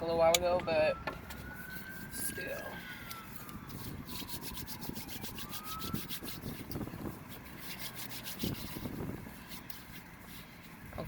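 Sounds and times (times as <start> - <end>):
hands rubbing briskly together: 3.3 - 11.0.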